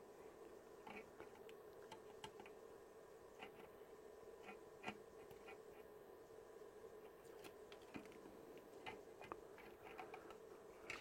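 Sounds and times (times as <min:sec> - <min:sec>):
faint plastic clicks and taps: 0:00.8 - 0:02.6.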